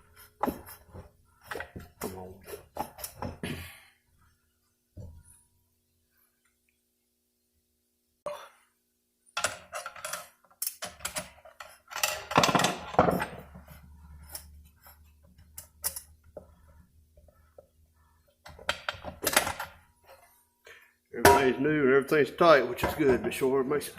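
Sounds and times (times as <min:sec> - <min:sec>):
metal parts clinking and clanking: 0:09.4 - 0:13.5.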